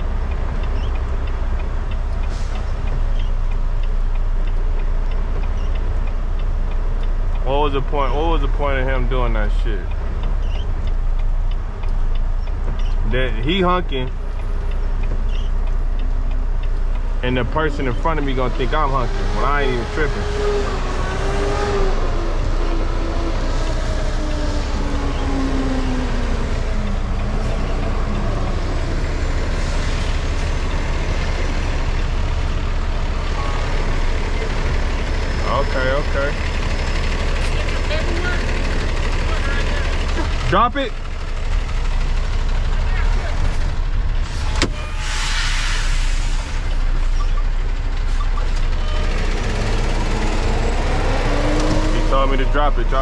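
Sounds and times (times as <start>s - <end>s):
truck diesel engine humming: 0.0s - 53.0s
air brake hissing: 24.8s - 34.7s, 44.2s - 48.6s.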